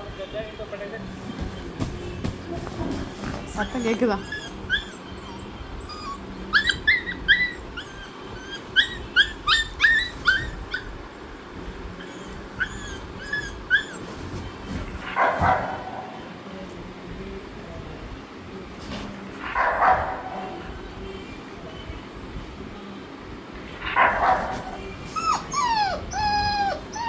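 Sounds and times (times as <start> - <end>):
dog whimpering and yipping: 3.3 - 11.0, 12.0 - 14.5, 25.1 - 27.0.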